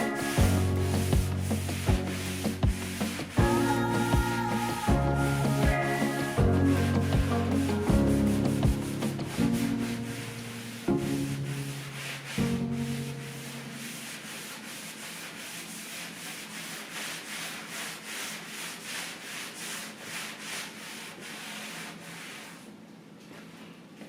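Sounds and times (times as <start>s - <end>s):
background music notes: 0.0s - 14.0s
rubbing on wooden tabletop: 0.0s - 22.8s.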